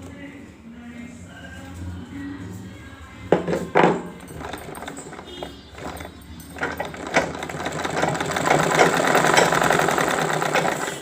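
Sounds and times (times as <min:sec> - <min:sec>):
background music: 0:00.0 - 0:11.0
sewing machine clicks: 0:04.3 - 0:11.0
sewing machine running: 0:04.3 - 0:11.0.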